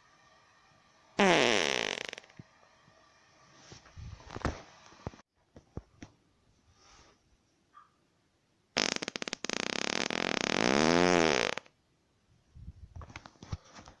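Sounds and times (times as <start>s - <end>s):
person farting: 1.2s - 2.4s, 8.8s - 11.8s.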